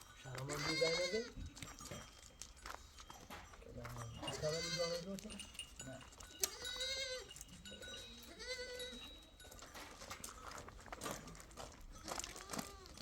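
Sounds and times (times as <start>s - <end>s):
livestock bleating: 0.5s - 1.4s, 4.3s - 5.1s, 6.4s - 7.3s, 8.3s - 9.0s.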